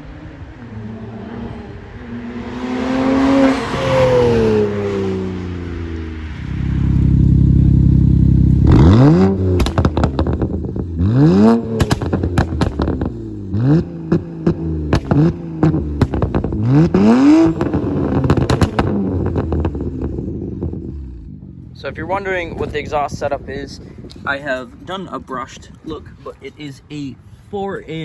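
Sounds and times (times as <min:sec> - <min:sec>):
car engine revving: 0:00.0 - 0:22.8
exhaust pops and crackles: 0:06.3 - 0:26.4.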